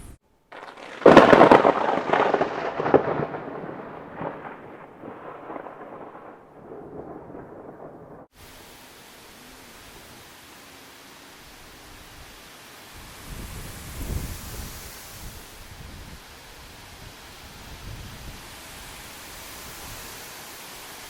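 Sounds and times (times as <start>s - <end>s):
steady hiss: 0.0s - 0.4s, 8.3s - 21.0s
rolling thunder rumble: 0.0s - 8.3s
thunderclap crack: 0.5s - 8.3s.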